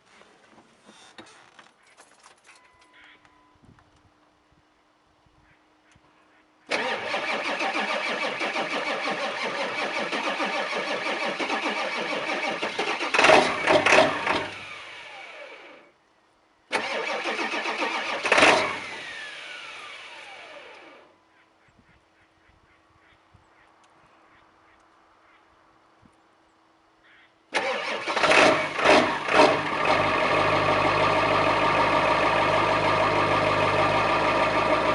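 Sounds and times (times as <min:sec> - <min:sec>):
diesel engine firing in surges: 0:06.7 - 0:15.4, 0:16.7 - 0:20.6, 0:27.6 - 0:34.9
starter motor cranking: 0:06.7 - 0:15.8, 0:16.7 - 0:21.0, 0:27.6 - 0:31.1.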